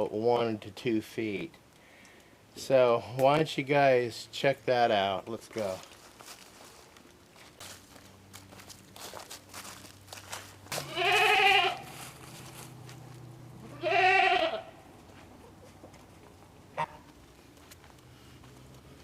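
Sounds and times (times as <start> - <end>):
goat bleating: 10.7 - 12.0, 13.6 - 14.8.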